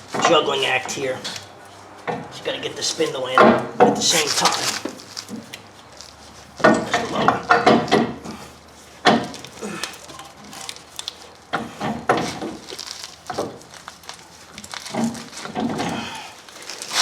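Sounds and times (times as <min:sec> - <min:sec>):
heavy metal parts knocking and clinking: 0:06.6 - 0:08.3.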